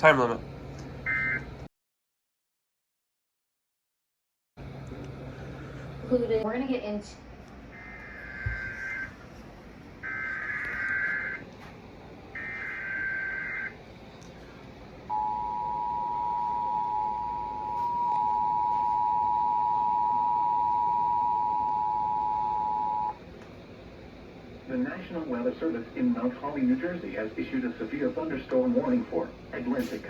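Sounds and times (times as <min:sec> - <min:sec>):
two-tone attention signal: 0:07.8 - 0:09.1, 0:15.1 - 0:23.2.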